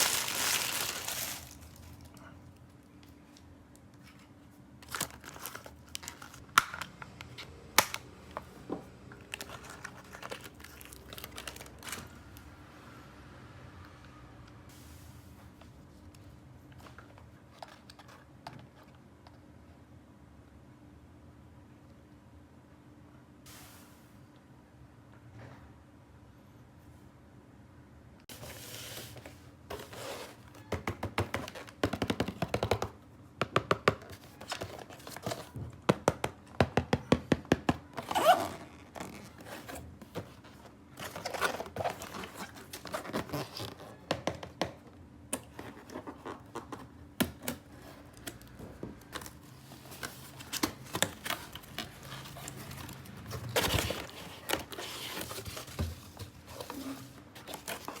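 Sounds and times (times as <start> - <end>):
packaging crinkling: 0.0 - 2.3, 4.8 - 6.6, 9.2 - 12.2.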